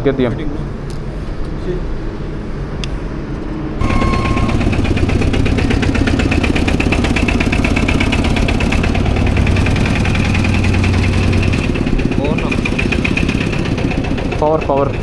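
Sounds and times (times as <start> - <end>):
short steady tone: 3.8 - 7.2
motorcycle engine idling: 3.8 - 15.0.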